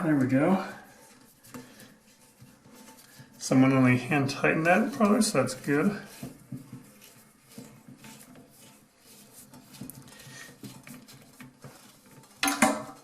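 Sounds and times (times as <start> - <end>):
metal pot clank: 12.2 - 13.0.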